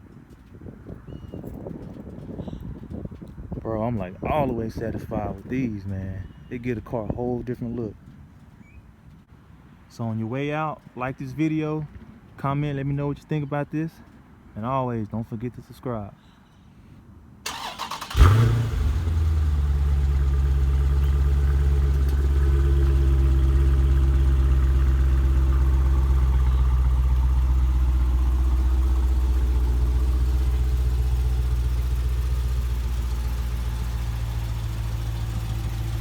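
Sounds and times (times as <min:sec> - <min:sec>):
car engine idling: 0:17.5 - 0:36.0.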